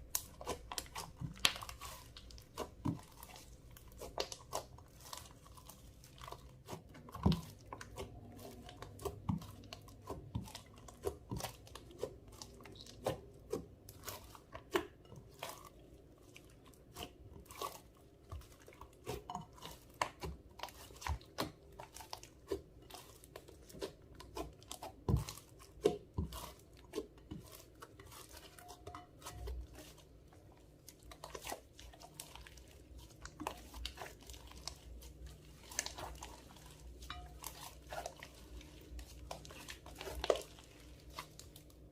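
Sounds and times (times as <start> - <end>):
sticky slime popping: 0.0 - 5.5.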